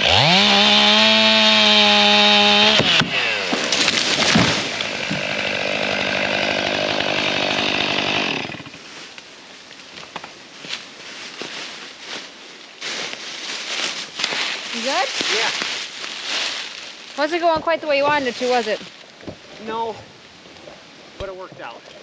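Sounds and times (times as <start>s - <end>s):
chainsaw revving: 0.0s - 8.8s
wood cracking: 0.0s - 11.6s, 12.8s - 20.0s.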